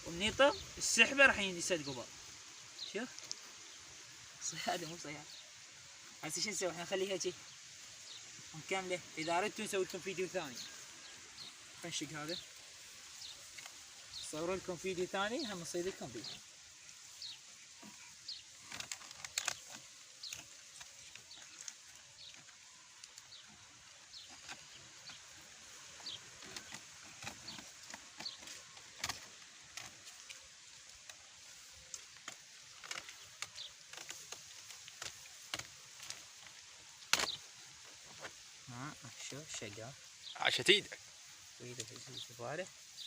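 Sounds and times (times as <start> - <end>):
material cracking and squeaking: 17.8 - 23.3, 24.2 - 25.3, 26.4 - 31.2, 31.8 - 37.4.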